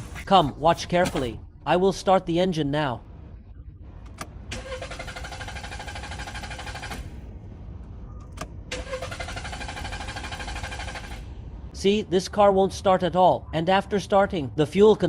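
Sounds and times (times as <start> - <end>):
car starter cranking engine: 4.1 - 7.2, 8.3 - 11.3.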